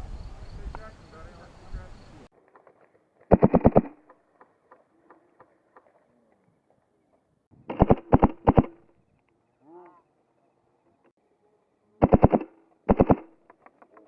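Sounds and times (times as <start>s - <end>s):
airsoft rifle burst: 2.4s - 4.0s, 7.7s - 8.9s, 12.0s - 13.6s
faint airsoft gun shots: 3.3s - 4.0s, 7.7s - 8.8s, 12.0s - 13.4s.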